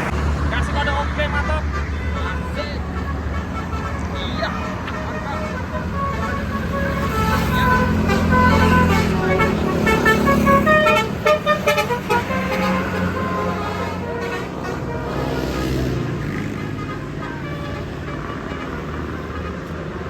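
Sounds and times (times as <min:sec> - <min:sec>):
bus engine: 0:00.0 - 0:20.0
multi-tone bus horn toots: 0:00.0 - 0:20.0
traffic: 0:00.0 - 0:20.0.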